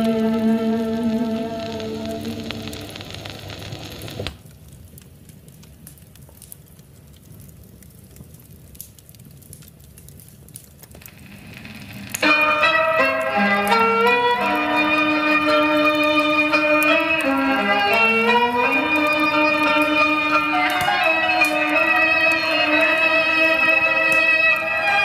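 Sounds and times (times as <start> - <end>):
held sung notes: 0.0 - 3.4
wood fire crackling: 0.0 - 25.0
keyboard instrument music: 12.1 - 25.0.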